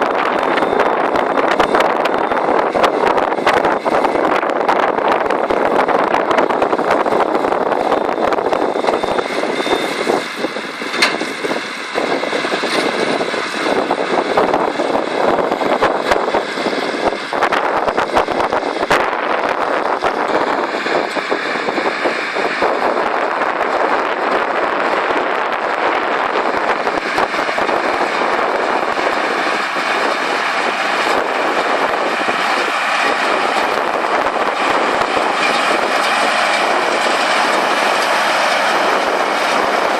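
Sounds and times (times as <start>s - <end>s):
round baler clattering: 0.0s - 39.9s
sharp clicks and knocks: 10.9s - 11.3s.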